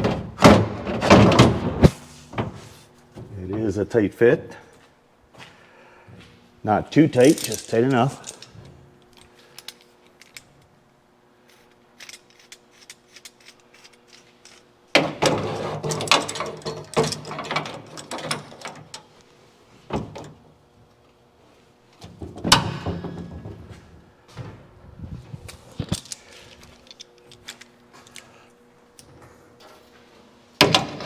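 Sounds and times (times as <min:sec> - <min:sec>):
metal parts clanking: 0:07.0 - 0:08.8, 0:12.0 - 0:19.1.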